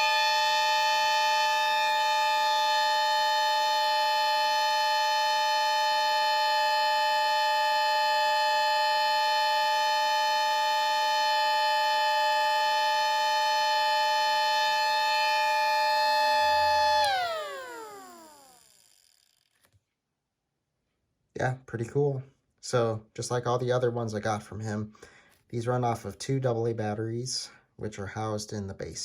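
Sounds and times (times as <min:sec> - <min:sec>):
air raid siren dual-tone chord: 0:00.0 - 0:18.6.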